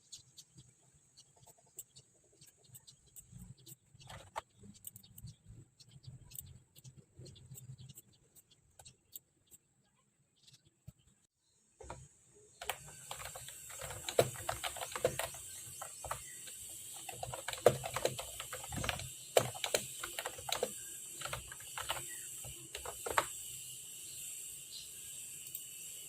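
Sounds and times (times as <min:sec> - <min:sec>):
faint hiss: 0:11.9 - 0:26.0
keyboard key clicks: 0:12.6 - 0:16.3, 0:17.0 - 0:23.3.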